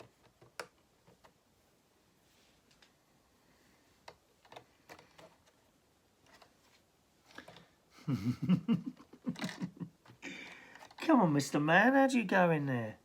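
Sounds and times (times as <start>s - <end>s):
man muttering: 8.0s - 9.8s
plastic pieces clicking: 9.2s - 11.1s.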